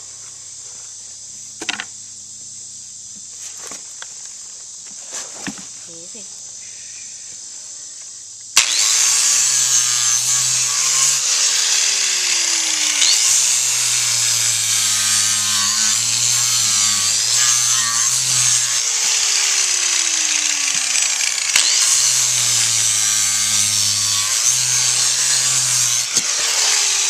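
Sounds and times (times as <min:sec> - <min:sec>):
power grinder rasping hoof: 0:08.6 - 0:27.0.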